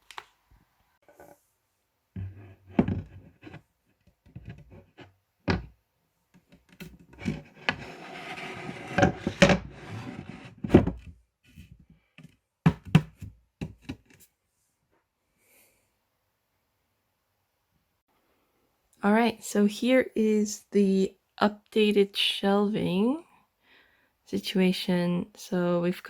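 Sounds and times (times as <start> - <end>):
knocks and thunks on wood: 12.6 - 14.0.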